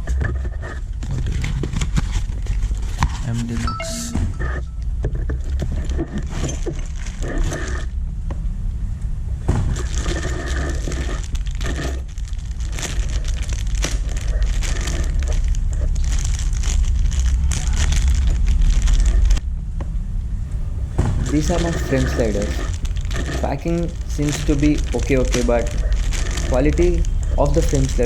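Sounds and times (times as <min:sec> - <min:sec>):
packaging crinkling and rustling: 0:10.8 - 0:19.4, 0:21.1 - 0:28.0
steady low rumble: 0:20.4 - 0:22.0.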